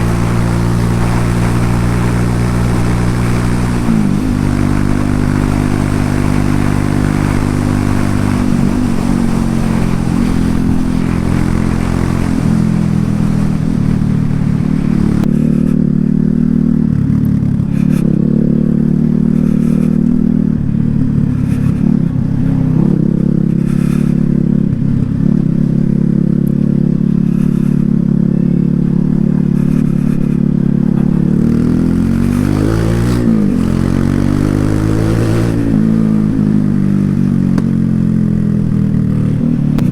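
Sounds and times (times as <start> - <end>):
rushing hiss: 0.0 - 15.3
motorcycle engine and exhaust: 0.0 - 39.9.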